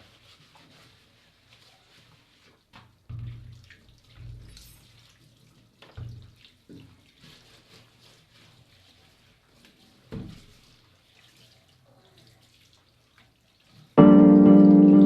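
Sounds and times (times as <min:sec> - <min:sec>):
tap water splashing into sink: 0:02.7 - 0:07.3, 0:09.6 - 0:11.4.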